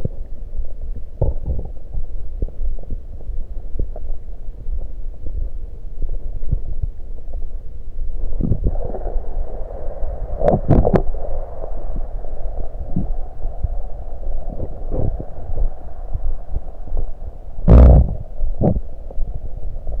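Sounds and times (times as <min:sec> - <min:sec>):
stomach gurgling and rumbling: 0:00.0 - 0:20.0
steady low throb: 0:08.4 - 0:20.0.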